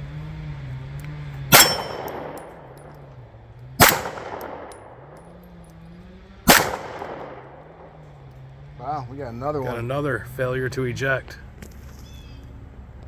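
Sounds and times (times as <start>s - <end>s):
pistol shots echoing: 1.5s - 3.0s, 3.8s - 5.5s, 6.5s - 8.1s
metallic pings of steel targets: 1.5s - 3.1s.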